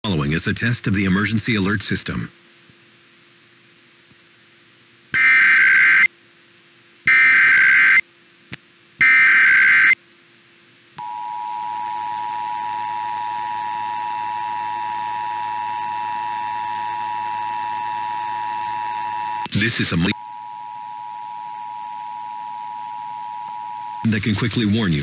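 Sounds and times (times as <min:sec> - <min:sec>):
data bursts: 0:05.2 - 0:06.1, 0:07.1 - 0:08.0, 0:09.0 - 0:10.0.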